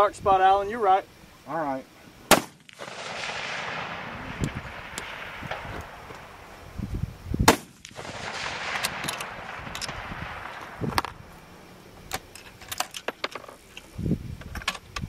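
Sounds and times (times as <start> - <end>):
rifle shot: 2.3 - 6.7, 7.4 - 11.7.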